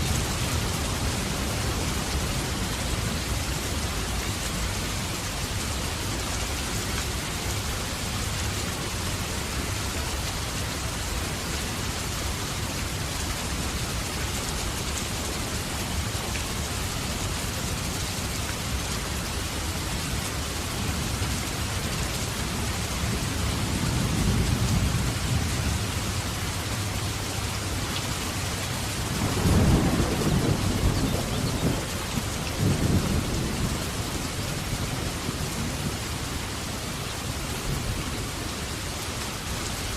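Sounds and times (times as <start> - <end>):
heavy rain falling: 0.0 - 39.9
thunder rumbling: 29.0 - 36.0.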